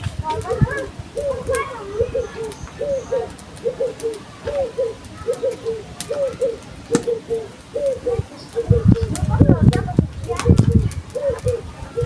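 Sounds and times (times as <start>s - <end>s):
faint clicks: 0.0s - 11.7s
dove cooing: 0.0s - 12.0s.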